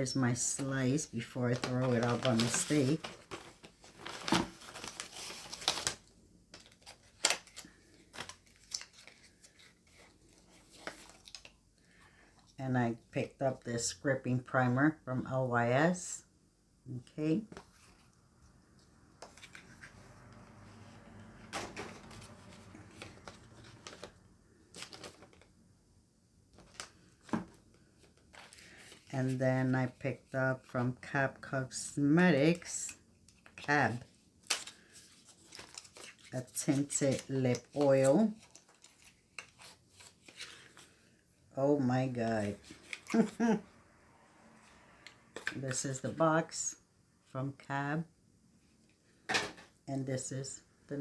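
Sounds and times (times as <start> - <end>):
packaging rustling and crinkling: 0.0 - 11.6, 21.4 - 25.5, 26.5 - 29.1, 34.4 - 41.2, 42.4 - 43.6.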